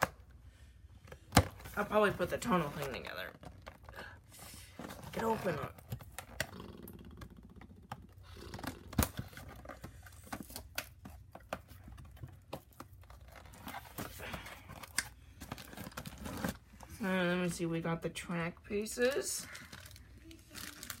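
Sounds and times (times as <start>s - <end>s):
packaging rustling and crinkling: 1.4s - 6.4s, 7.8s - 16.9s, 19.4s - 21.0s.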